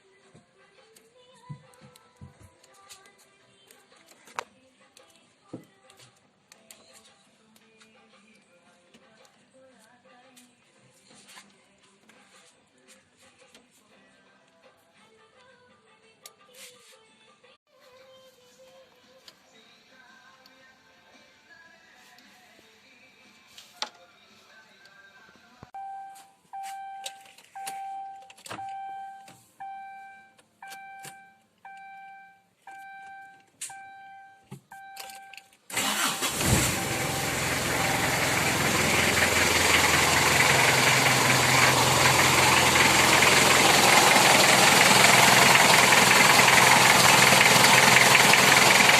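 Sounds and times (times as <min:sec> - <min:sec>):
diesel engine starting and running: 0:35.7 - 0:48.9.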